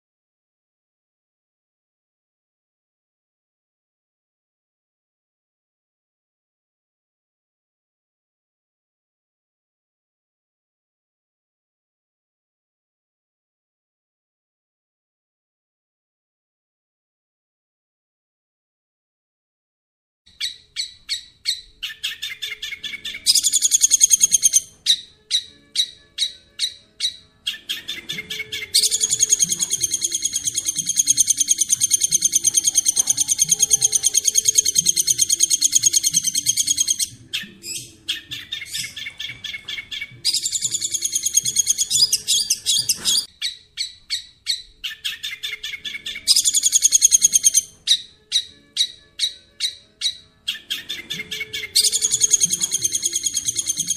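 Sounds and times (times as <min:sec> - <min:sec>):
bird chipping and trilling: 0:20.3 - 0:53.9.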